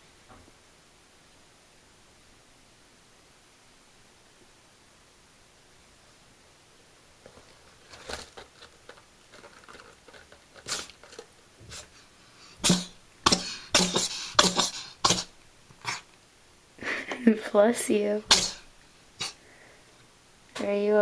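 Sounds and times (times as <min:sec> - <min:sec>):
cat sneezing: 0:10.6 - 0:11.0, 0:11.7 - 0:16.1, 0:18.2 - 0:19.4.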